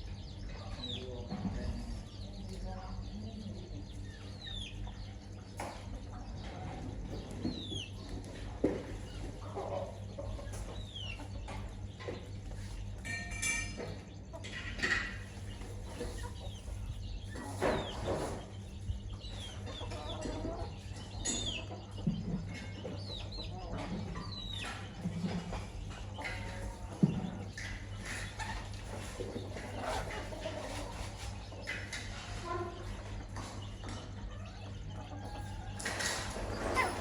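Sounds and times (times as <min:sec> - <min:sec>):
chicks peeping: 0:00.0 - 0:37.0
steady low hum: 0:00.0 - 0:37.0
hen clucking: 0:13.9 - 0:37.0.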